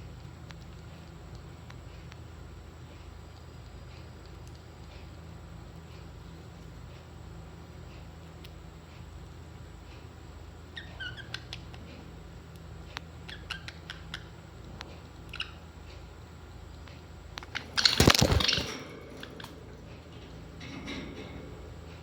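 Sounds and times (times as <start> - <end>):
steady low hum: 0.0 - 22.0
parrots chirping: 10.7 - 11.8, 13.1 - 16.0, 17.4 - 21.7.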